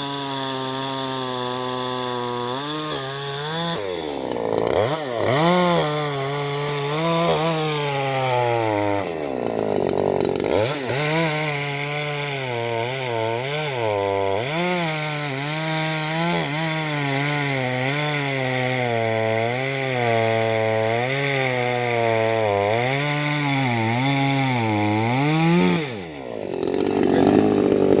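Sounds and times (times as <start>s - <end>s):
chainsaw cutting log: 0.0s - 28.0s.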